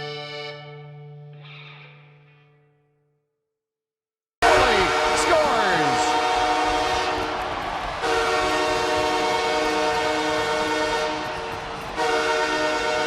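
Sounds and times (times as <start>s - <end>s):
goal horn blasts: 4.4s - 7.4s, 8.0s - 13.0s.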